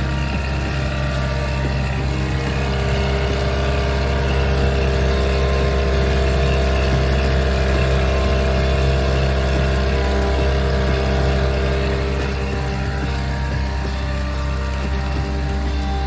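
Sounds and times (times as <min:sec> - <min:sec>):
outboard motor droning: 0:00.0 - 0:16.0.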